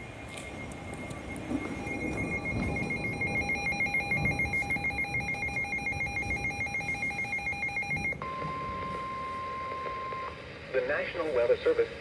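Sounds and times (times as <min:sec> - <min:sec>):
pulsing electronic alert warble: 0:01.7 - 0:09.3.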